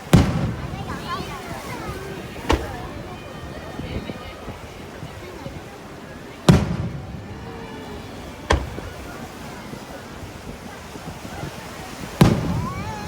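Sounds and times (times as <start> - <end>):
fireworks booming: 0.0 - 3.1, 6.4 - 10.7, 12.0 - 13.0
crowd murmuring: 0.0 - 13.0.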